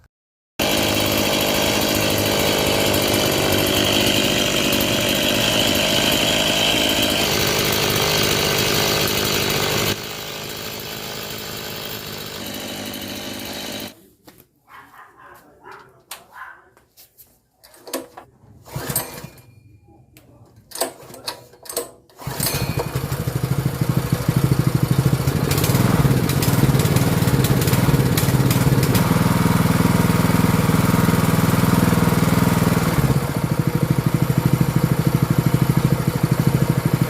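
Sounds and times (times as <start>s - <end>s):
chainsaw engine running: 0.6s - 14.0s, 22.2s - 37.0s.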